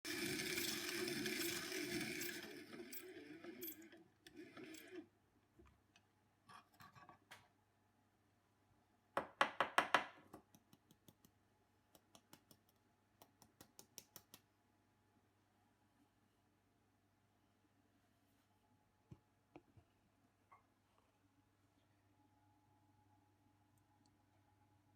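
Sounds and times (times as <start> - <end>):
coffee grinder grinding: 0.0 - 5.1.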